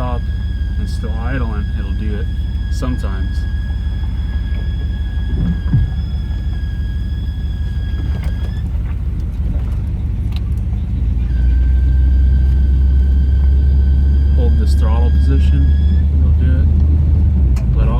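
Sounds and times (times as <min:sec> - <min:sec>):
high-pitched squeal: 0:00.0 - 0:08.7, 0:11.4 - 0:16.6
engine idling: 0:00.0 - 0:17.9.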